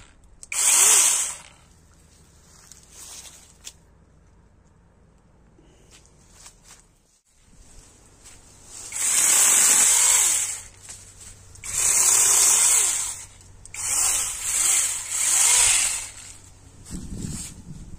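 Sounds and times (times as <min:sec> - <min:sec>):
electric mini chainsaw whining: 0:00.0 - 0:01.7, 0:08.9 - 0:10.8, 0:11.6 - 0:16.5.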